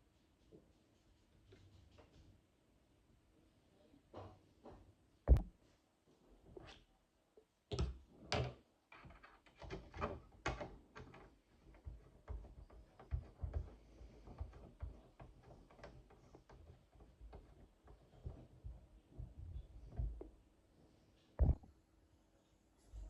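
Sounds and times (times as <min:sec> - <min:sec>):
objects knocking and clunking: 0:07.7 - 0:20.4, 0:21.4 - 0:21.7.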